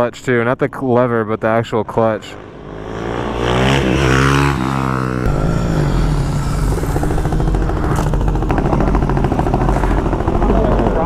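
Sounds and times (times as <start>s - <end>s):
motorcycle engine revving: 2.2s - 11.0s.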